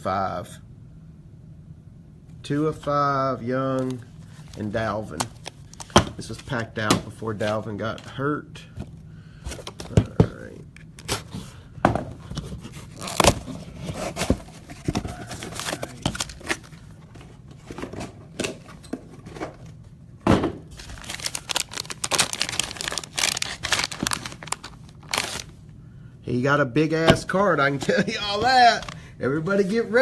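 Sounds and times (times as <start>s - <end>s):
packaging tearing and crinkling: 12.7s - 16.9s, 20.7s - 25.6s.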